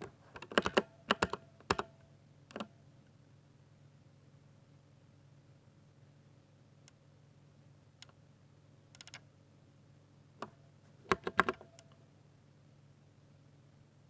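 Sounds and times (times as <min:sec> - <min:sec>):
mechanical keyboard keystrokes: 0:00.4 - 0:01.9, 0:11.1 - 0:11.9.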